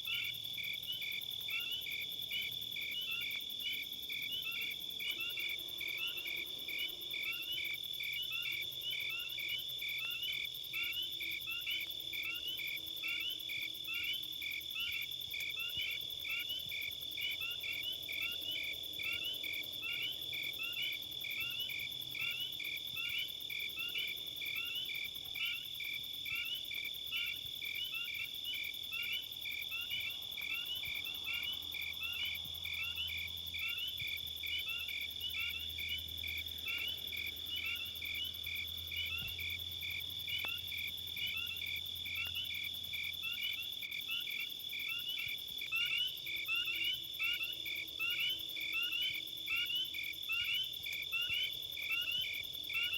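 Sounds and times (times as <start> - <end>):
insects chirping: 0.0 - 52.9.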